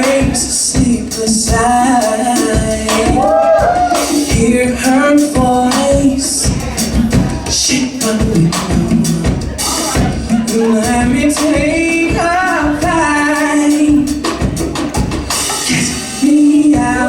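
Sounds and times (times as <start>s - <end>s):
bass: 0.0s - 17.0s
drum hits: 0.0s - 17.0s.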